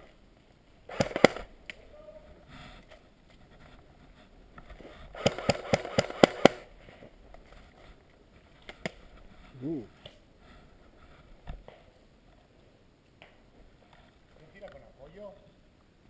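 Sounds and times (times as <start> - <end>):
airsoft gun shots: 0.9 - 1.5, 5.2 - 6.7.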